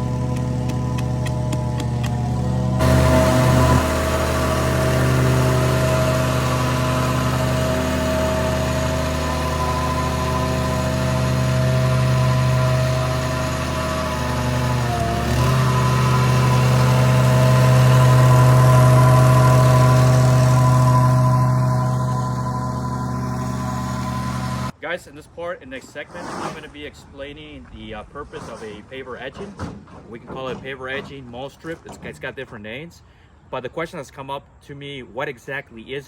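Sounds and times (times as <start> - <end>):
construction machinery engine running: 0.0 - 24.7.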